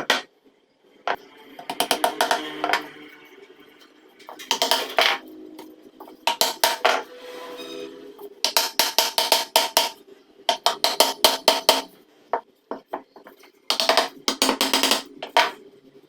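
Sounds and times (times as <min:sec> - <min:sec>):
percussive background music: 0:01.1 - 0:03.0, 0:04.3 - 0:07.1, 0:08.2 - 0:11.9, 0:13.2 - 0:15.6.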